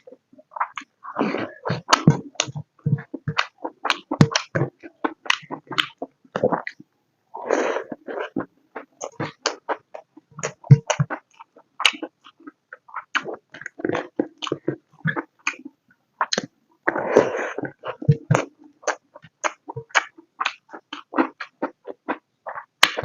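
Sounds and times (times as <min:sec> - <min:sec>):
wet chewing and lip smacks: 0:08.0 - 0:16.5.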